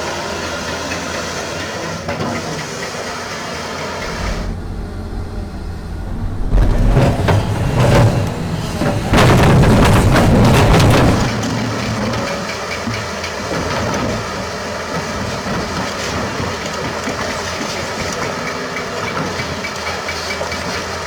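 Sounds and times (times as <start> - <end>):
excavator diesel engine running: 3.8 - 18.9
dirt and rock pouring into truck: 4.0 - 11.9.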